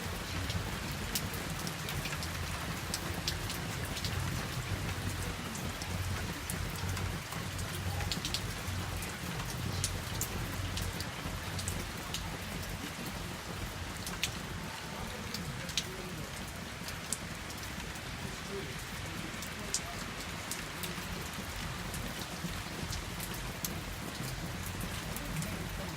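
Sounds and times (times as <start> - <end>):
steady rain falling: 0.0 - 25.9.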